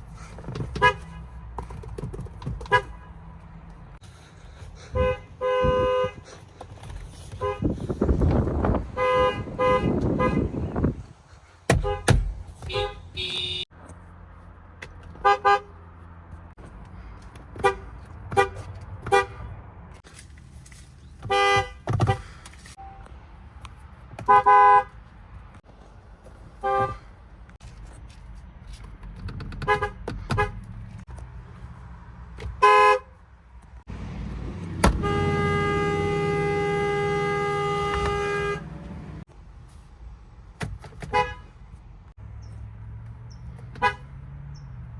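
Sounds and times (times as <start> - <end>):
car horns tooting: 0.6 - 1.5, 2.5 - 3.3, 4.8 - 6.4, 7.3 - 7.9, 8.5 - 10.9, 11.7 - 13.7, 15.1 - 15.8, 17.5 - 19.5, 21.2 - 23.1, 24.2 - 25.0, 26.6 - 27.1, 29.6 - 30.6, 32.4 - 33.2, 34.7 - 39.2, 41.0 - 41.6, 43.7 - 44.2
long car horn blast: 4.9 - 6.2, 9.0 - 10.6, 12.7 - 13.7, 34.9 - 39.0.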